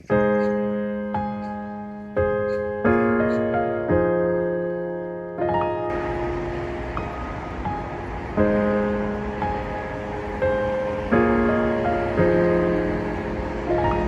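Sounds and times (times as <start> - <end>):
slow solo piano: 0.0 - 14.0
steady rushing noise: 5.9 - 14.0.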